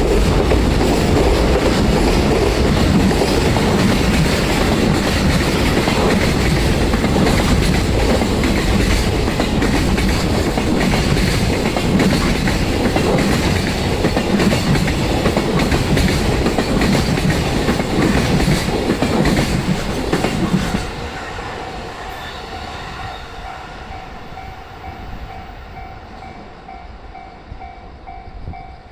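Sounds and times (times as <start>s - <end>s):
wheels clickety-clack on rail joints: 0.0s - 21.4s
freight train rumbling past: 0.0s - 28.9s.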